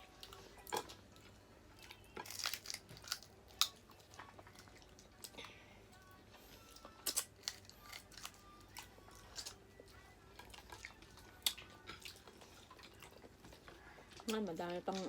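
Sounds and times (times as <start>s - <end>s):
quiet chewing: 0.0s - 15.0s
crab shell cracking: 2.2s - 3.8s, 7.0s - 8.4s.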